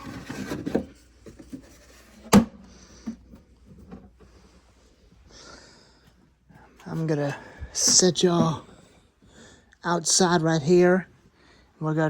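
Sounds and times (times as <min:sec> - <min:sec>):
rustling and handling noises: 0:00.0 - 0:05.3.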